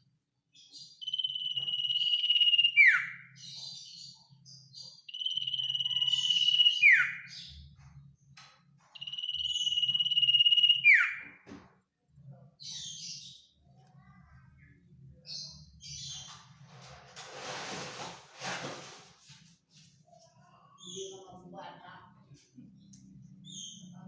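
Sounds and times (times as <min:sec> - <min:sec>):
soft bird chirps: 0:00.6 - 0:08.1, 0:08.8 - 0:11.4
bird trilled whistles: 0:01.0 - 0:03.3, 0:05.1 - 0:07.3, 0:09.0 - 0:11.3.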